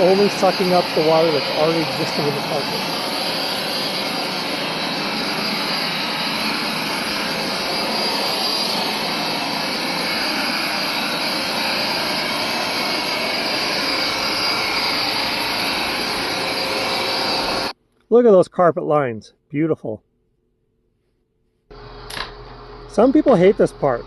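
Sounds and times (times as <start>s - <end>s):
carpet cleaner motor whirring: 0.0s - 17.8s
high hiss of rushing air: 0.0s - 17.8s.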